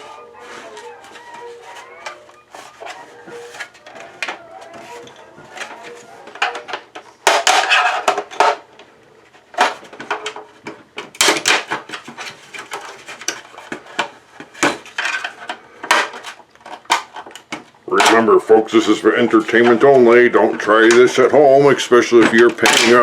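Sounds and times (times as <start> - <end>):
clattering knocks: 0.0 - 8.7
plastic housing cracking: 9.5 - 18.4.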